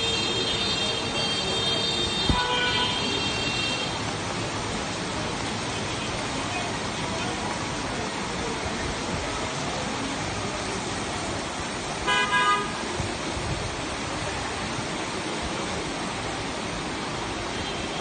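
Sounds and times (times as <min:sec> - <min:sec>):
vehicle horn double honk: 0:00.0 - 0:03.9, 0:12.1 - 0:12.7
heavy rain pouring: 0:00.0 - 0:18.0.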